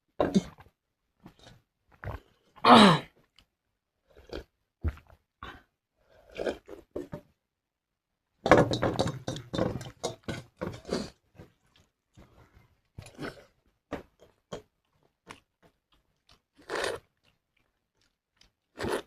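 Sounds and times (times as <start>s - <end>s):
person chewing and smacking: 9.3s - 19.0s.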